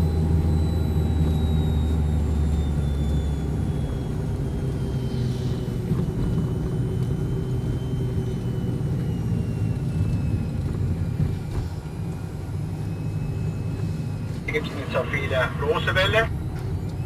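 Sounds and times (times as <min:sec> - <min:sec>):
car engine and tyres rumbling: 0:00.0 - 0:17.0
faint steady whine: 0:14.4 - 0:16.3.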